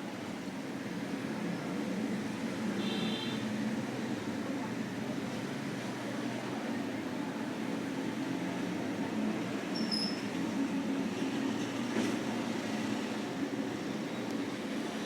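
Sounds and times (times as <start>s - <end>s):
brief high squeak: 9.7s - 10.3s.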